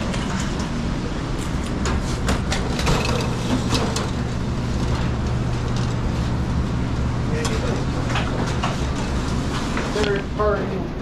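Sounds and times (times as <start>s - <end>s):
kitchen machinery hum: 0.0s - 11.0s
utensils and pans clattering: 2.7s - 4.2s.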